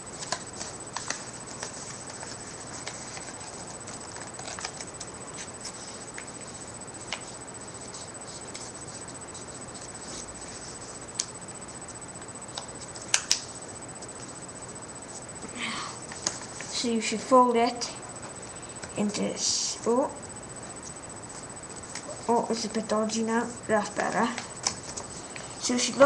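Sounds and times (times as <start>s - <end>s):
paper folding crackles and clicks: 0.1s - 11.4s, 12.5s - 14.4s, 16.1s - 16.8s, 23.9s - 26.0s.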